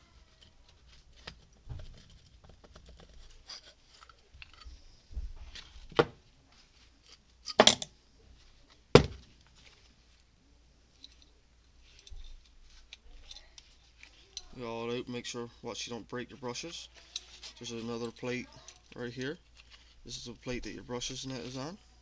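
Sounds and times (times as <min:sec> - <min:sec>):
metal parts clicking and scraping: 0:10.9 - 0:14.6, 0:16.6 - 0:21.7.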